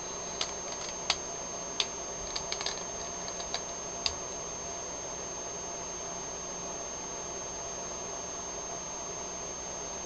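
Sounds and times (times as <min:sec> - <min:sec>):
thin high whine: 0:00.0 - 0:07.1
plastic pieces clicking: 0:00.3 - 0:01.2, 0:02.2 - 0:04.2.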